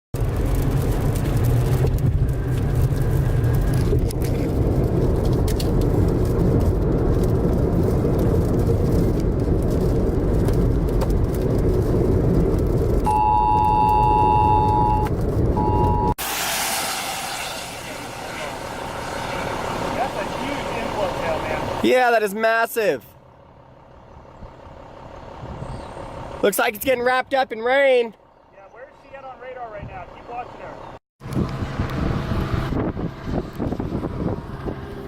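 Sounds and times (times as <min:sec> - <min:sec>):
wind rumble: 0:00.2 - 0:21.9, 0:23.2 - 0:26.4, 0:31.2 - 0:35.0
vehicle noise: 0:00.2 - 0:35.0
two-note alert tone: 0:13.1 - 0:16.1.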